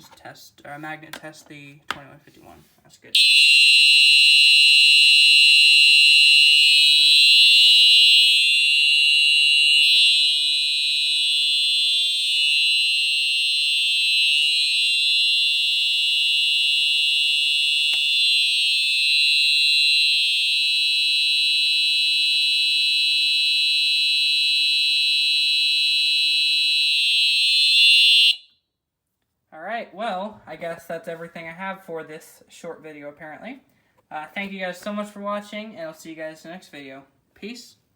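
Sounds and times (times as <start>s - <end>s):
fire alarm horn tone: 3.2s - 28.6s.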